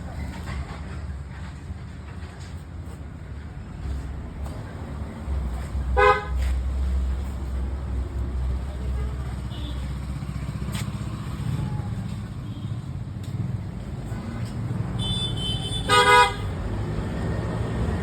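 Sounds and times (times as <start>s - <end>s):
road traffic rumble: 0.0s - 18.0s
vehicle horn honking: 6.0s - 6.4s, 15.0s - 16.6s.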